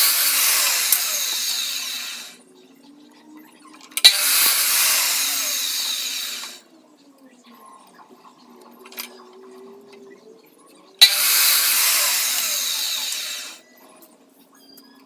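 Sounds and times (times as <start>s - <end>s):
power tool whirring: 0.0s - 2.4s, 4.0s - 6.6s, 11.0s - 13.6s.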